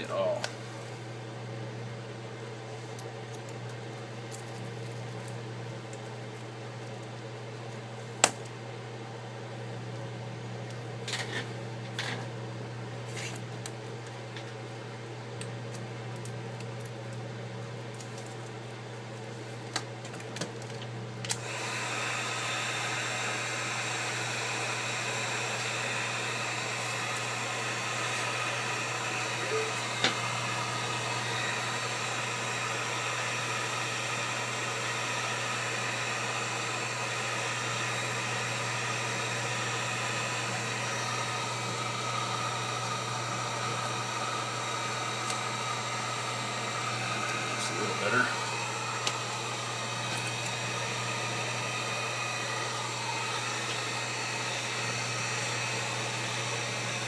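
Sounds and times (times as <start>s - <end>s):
heat gun blowing: 21.3s - 57.0s.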